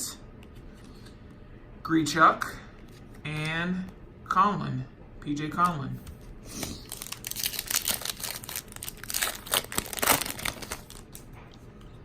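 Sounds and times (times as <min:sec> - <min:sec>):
foil wrapper crinkling and tearing: 0:06.6 - 0:11.3.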